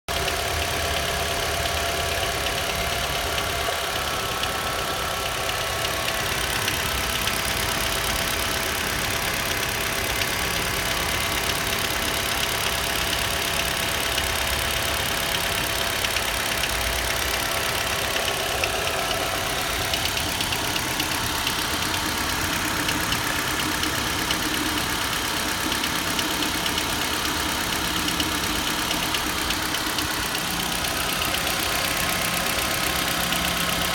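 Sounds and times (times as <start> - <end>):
petrol engine running: 0.2 - 33.9
rapid light ticking knock: 9.6 - 33.9.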